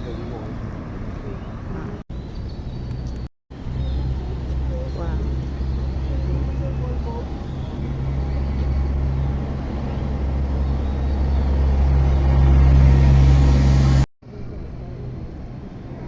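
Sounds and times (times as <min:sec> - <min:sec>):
boat motor humming: 0:03.5 - 0:14.0.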